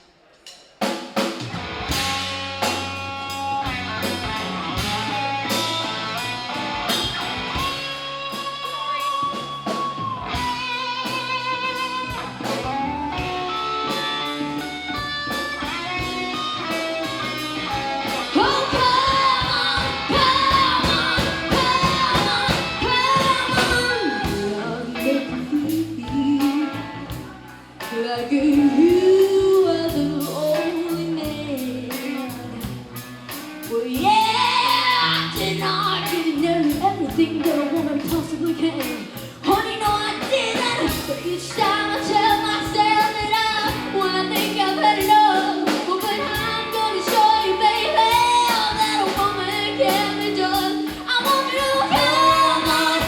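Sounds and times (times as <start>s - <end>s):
country-rock band playing: 0.8s - 53.0s
person singing: 17.2s - 53.0s.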